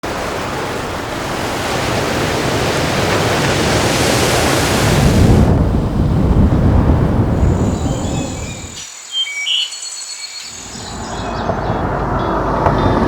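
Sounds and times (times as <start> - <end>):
heavy low rumble: 5.2 - 8.8.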